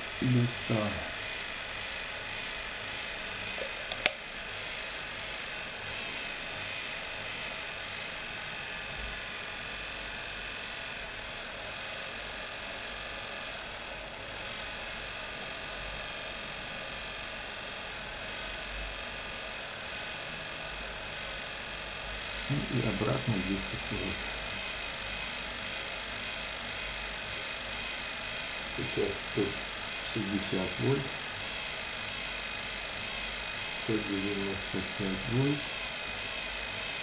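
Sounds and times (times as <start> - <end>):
sharp click: 3.6 - 4.2
washing machine motor whine: 19.7 - 37.0.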